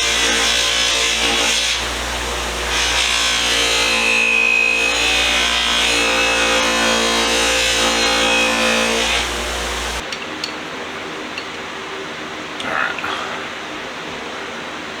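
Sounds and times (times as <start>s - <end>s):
buffing wheel motor hum: 1.6s - 3.0s, 8.4s - 10.0s.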